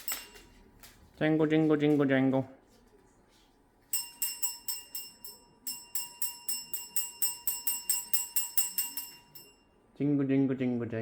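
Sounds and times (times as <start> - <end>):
small bell ringing: 0.0 - 0.7, 3.9 - 9.8.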